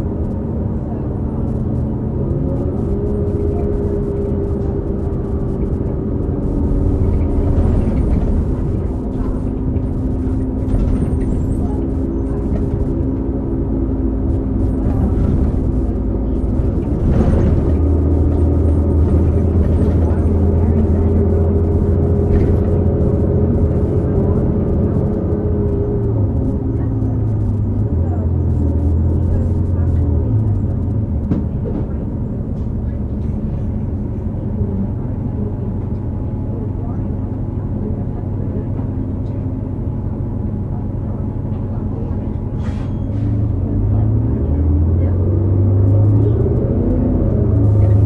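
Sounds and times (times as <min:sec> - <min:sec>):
bus diesel engine running: 0:00.0 - 0:48.0
transmission whine: 0:01.3 - 0:31.3.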